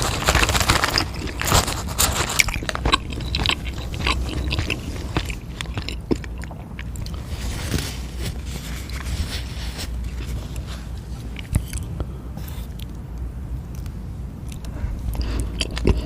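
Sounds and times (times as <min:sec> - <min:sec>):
crunchy clicks: 0:00.0 - 0:07.2
biting and chewing food: 0:00.0 - 0:16.0.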